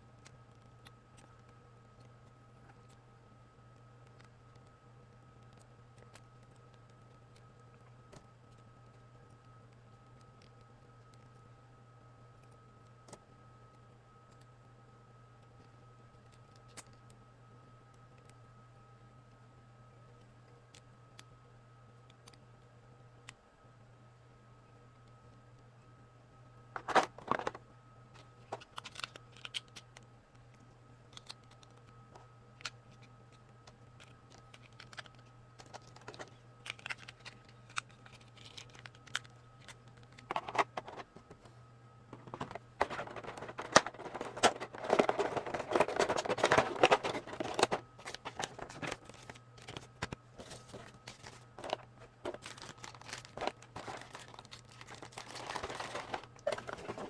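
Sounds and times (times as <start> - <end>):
packaging crinkling: 26.8 - 27.6, 34.0 - 41.5, 42.2 - 57.0.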